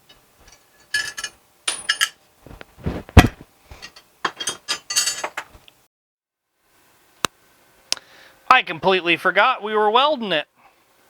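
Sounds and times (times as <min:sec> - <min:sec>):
metal tools clinking: 0:00.4 - 0:02.2, 0:03.8 - 0:05.5.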